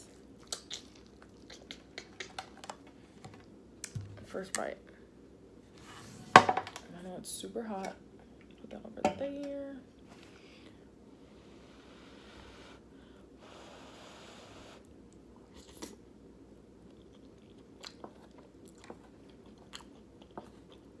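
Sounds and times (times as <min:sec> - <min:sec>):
close-up chewing: 0:00.0 - 0:03.3, 0:16.8 - 0:21.0
mouth clicks: 0:00.5 - 0:02.6.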